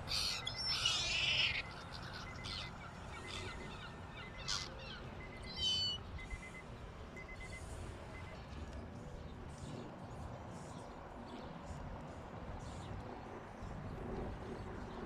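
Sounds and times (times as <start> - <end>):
seagulls calling: 0.0 - 6.6.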